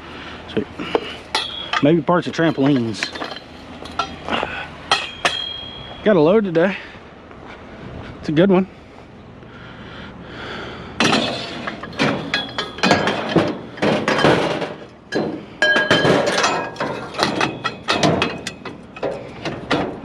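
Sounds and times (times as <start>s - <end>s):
scrap metal clanking: 0.8s - 6.0s, 11.0s - 20.0s
sharp ringing metallic hits: 1.3s - 6.5s, 11.0s - 19.3s.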